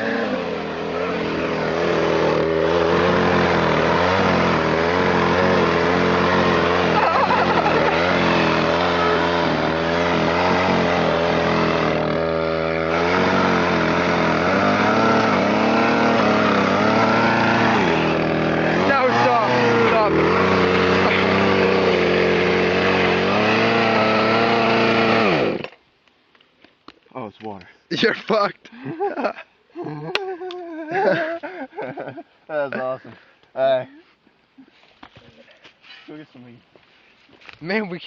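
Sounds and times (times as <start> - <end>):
chainsaw revving: 0.0 - 25.8.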